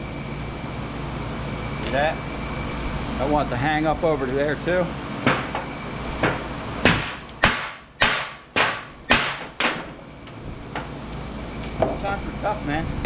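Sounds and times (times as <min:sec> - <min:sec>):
hammer striking metal: 0:06.2 - 0:09.9.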